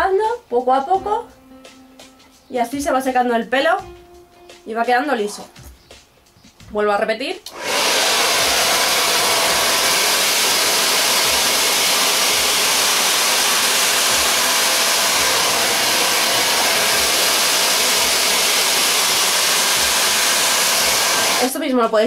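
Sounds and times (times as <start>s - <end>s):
hair dryer blowing: 7.5s - 21.6s.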